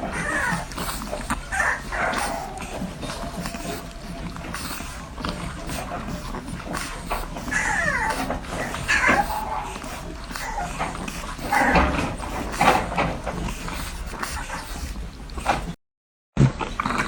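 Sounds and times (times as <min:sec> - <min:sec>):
puppies suckling: 0:00.0 - 0:15.8, 0:16.4 - 0:17.0
puppy squeaks and whimpers: 0:00.1 - 0:12.9.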